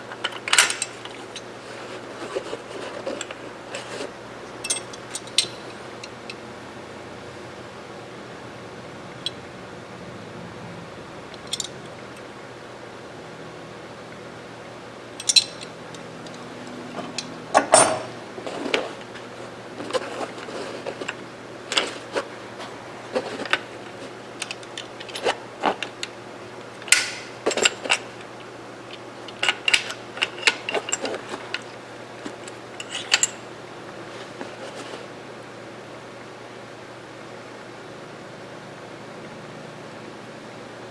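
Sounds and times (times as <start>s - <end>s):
steady low hum: 0.0s - 36.2s
metallic clicks of rifle parts: 0.1s - 1.4s.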